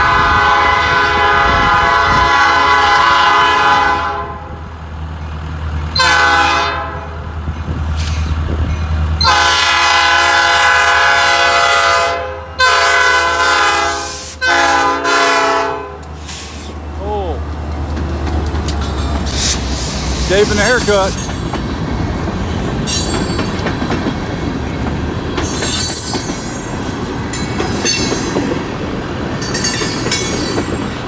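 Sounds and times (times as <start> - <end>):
locomotive air horn blasts: 0.0 - 4.6, 5.9 - 7.2, 9.2 - 16.4
locomotive engine rumbling: 0.0 - 31.0.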